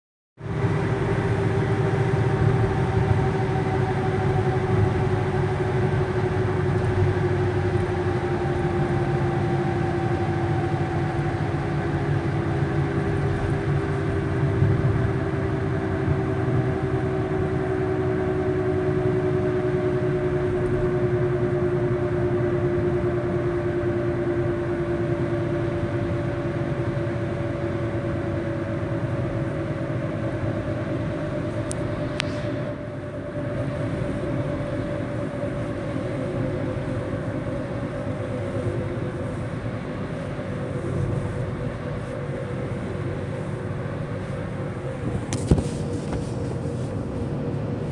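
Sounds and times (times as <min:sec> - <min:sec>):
car engine droning hum: 0:00.4 - 0:47.9
low rumble: 0:29.2 - 0:47.9.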